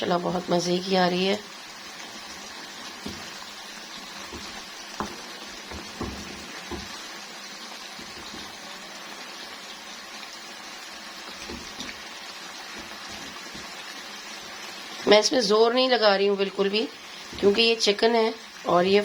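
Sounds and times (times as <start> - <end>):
food sizzling in a pot: 0.0 - 19.0
spoon knocking against pot: 4.2 - 7.0.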